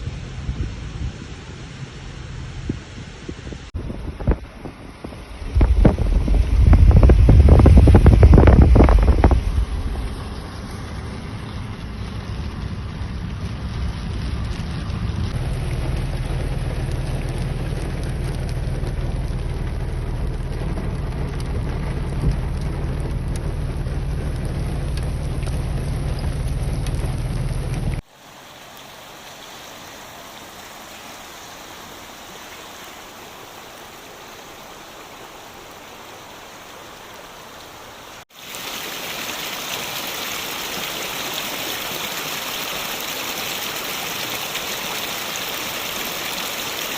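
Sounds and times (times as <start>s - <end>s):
low rumble: 0.0s - 28.0s
rain falling: 0.0s - 46.9s.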